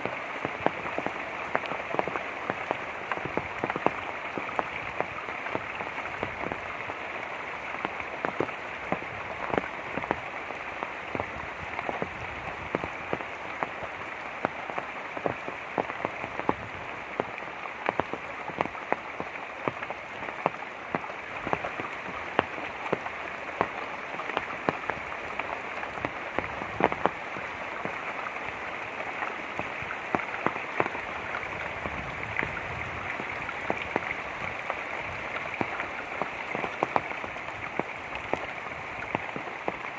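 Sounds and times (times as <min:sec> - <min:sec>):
light rain hissing: 0:00.0 - 0:39.9
raindrops striking: 0:00.0 - 0:39.9.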